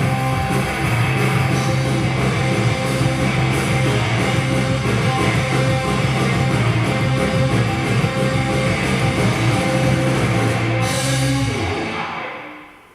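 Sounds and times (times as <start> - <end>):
loud rock music: 0.0 - 12.9.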